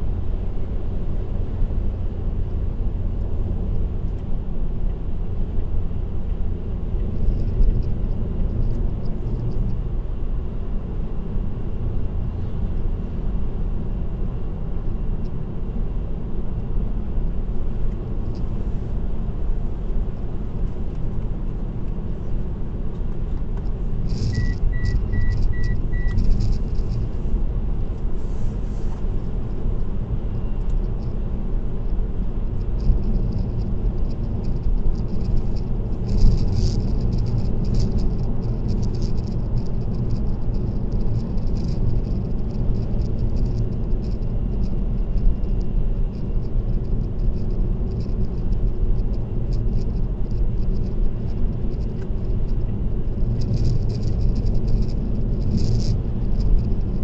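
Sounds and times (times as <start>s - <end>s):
car road and tyre noise: 0.0s - 57.0s
short high beeps: 24.3s - 26.2s.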